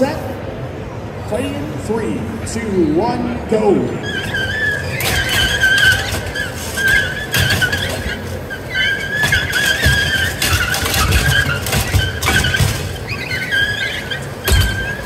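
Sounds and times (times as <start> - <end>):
robots knocking and scraping: 4.0 - 15.0.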